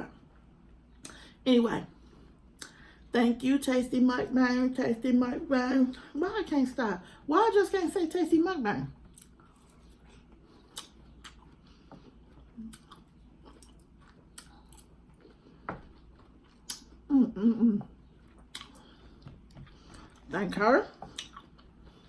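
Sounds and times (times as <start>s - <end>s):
mouth clicks and smacks: 10.6s - 11.6s, 18.2s - 19.3s.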